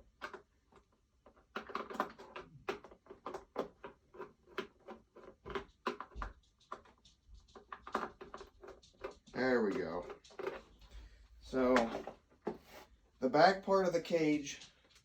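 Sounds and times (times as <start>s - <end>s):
plastic creaks: 0.0s - 6.2s.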